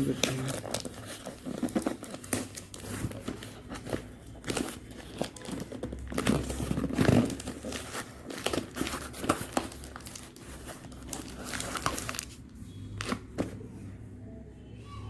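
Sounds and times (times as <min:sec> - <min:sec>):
packaging crinkling and tearing: 0:00.0 - 0:13.5.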